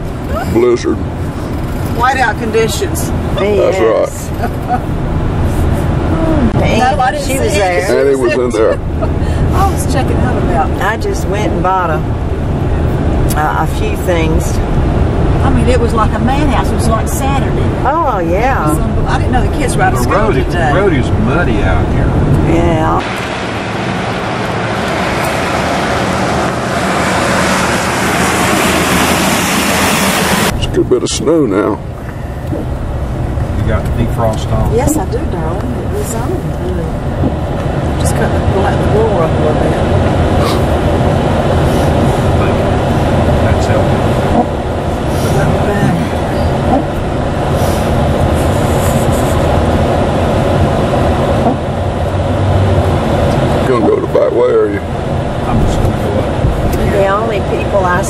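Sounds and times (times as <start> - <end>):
low engine hum: 0.0 - 58.0
tyres on wet slushy road: 0.0 - 58.0
tyre noise on wet road: 20.4 - 30.8.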